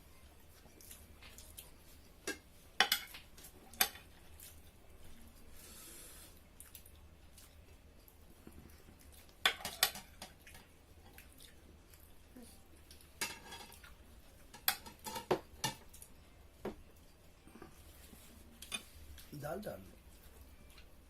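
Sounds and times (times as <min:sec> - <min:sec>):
cutlery clinking on plates: 0:02.2 - 0:04.1, 0:09.4 - 0:10.6, 0:13.2 - 0:16.0.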